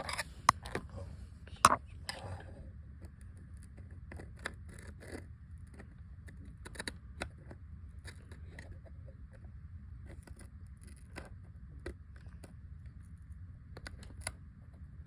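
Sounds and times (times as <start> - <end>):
light scrapes: 0.0 - 2.7.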